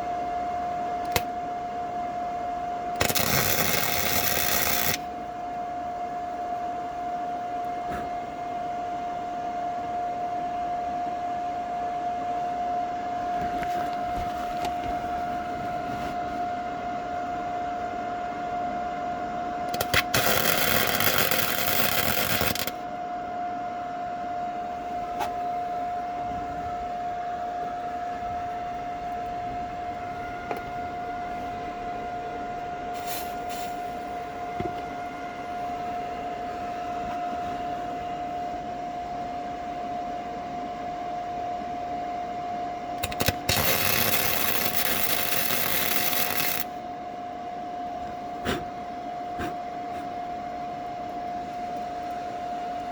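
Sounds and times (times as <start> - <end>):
steady humming tone: 0.0 - 52.9
welder arc crackling: 3.0 - 5.1, 19.7 - 22.8, 43.0 - 46.7.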